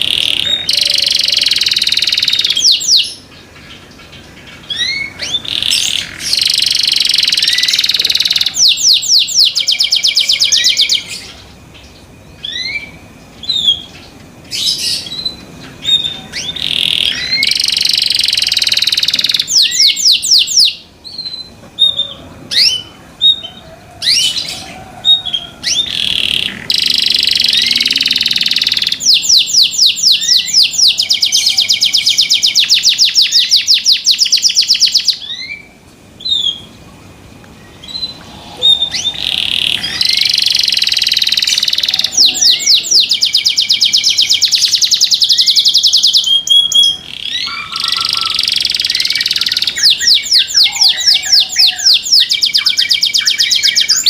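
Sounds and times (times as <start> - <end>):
canary singing: 0.0 - 54.0.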